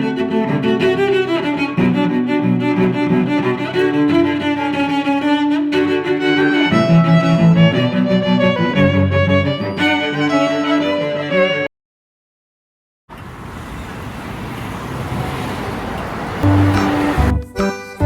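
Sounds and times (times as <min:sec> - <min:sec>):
violin and cello melody: 0:00.0 - 0:11.7, 0:16.4 - 0:18.0.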